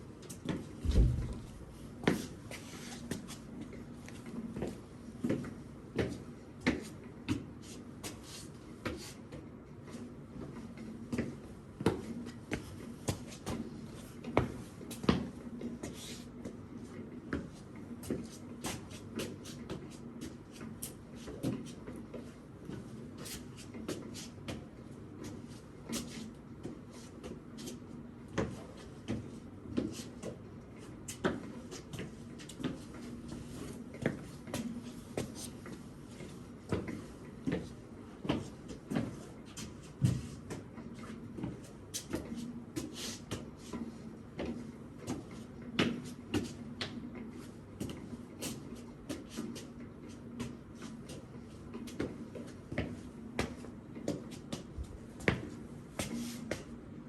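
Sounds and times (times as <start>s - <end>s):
steady low hum: 0.0s - 8.8s.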